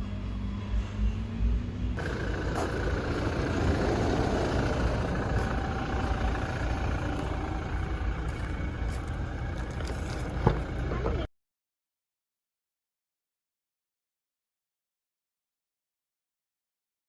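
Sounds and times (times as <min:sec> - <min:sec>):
vehicle engine rumbling: 0:00.0 - 0:11.3.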